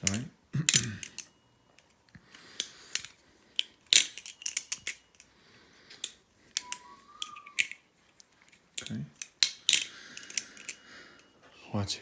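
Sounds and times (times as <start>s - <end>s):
butterfly knife clicking and clacking: 6.0s - 7.8s, 8.8s - 10.8s.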